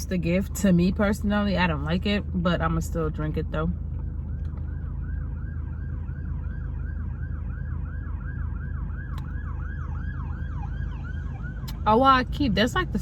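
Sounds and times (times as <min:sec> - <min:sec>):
low road rumble: 0:00.0 - 0:13.0
police siren wailing: 0:04.3 - 0:13.0.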